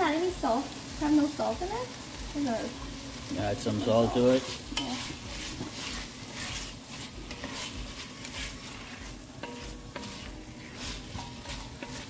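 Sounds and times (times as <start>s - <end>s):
oil sizzling: 0.0s - 12.0s
spoon scraping beans in a pot: 4.1s - 12.0s.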